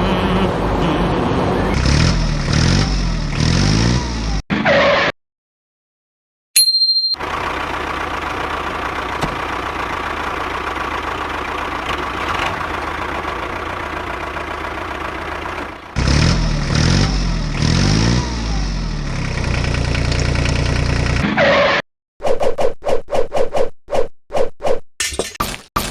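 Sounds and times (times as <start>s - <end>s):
short high beep: 6.6s - 7.2s
model tractor engine running: 7.2s - 16.3s, 19.2s - 21.2s.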